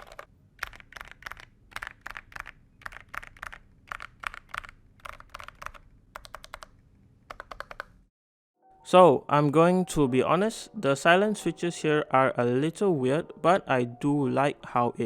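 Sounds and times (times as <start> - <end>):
muted mechanical keyboard typing: 0.0 - 8.0.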